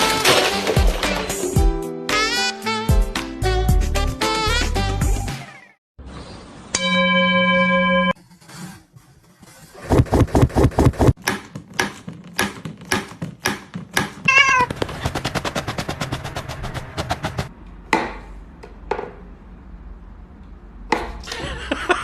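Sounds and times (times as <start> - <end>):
cat meowing: 14.3 - 14.8.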